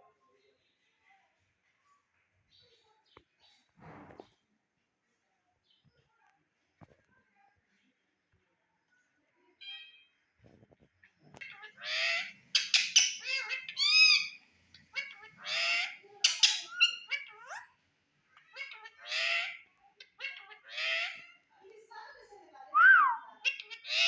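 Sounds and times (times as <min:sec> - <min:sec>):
parakeet squawks: 0:09.6 - 0:10.1, 0:11.4 - 0:17.7, 0:18.4 - 0:21.4, 0:23.1 - 0:24.0.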